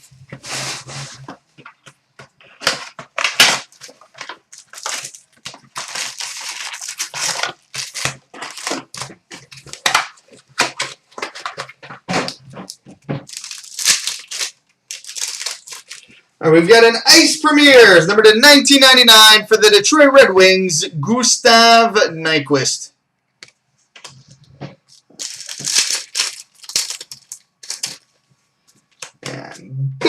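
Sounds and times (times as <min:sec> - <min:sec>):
packaging tearing and crinkling: 0:02.6 - 0:16.2, 0:24.8 - 0:28.1.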